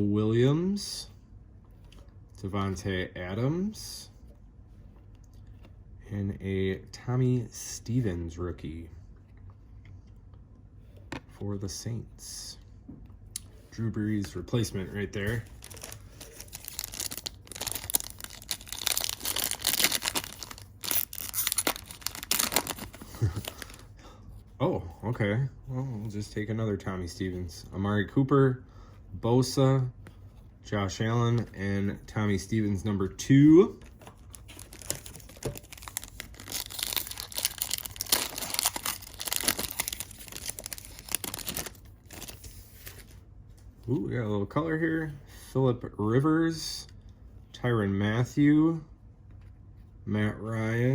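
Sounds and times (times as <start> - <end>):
wrapper crinkling and tearing: 15.2 - 23.9, 33.9 - 43.1.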